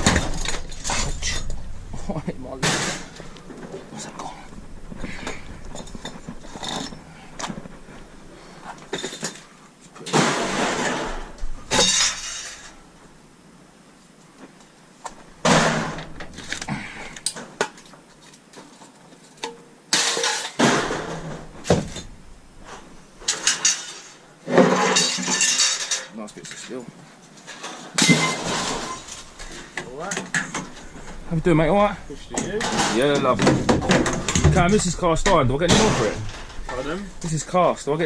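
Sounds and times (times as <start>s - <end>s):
scrap metal crashing: 0.0s - 3.6s, 10.1s - 12.8s, 15.4s - 16.5s, 19.9s - 22.1s, 23.2s - 26.1s, 27.5s - 29.7s, 32.5s - 37.4s.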